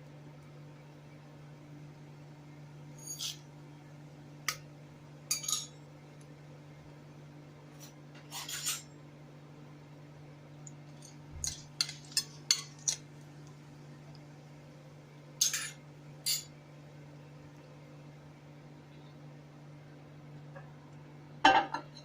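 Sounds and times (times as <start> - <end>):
metal utensils clinking on dishes: 5.3 - 5.8, 8.3 - 8.9, 11.0 - 13.0, 15.4 - 16.5.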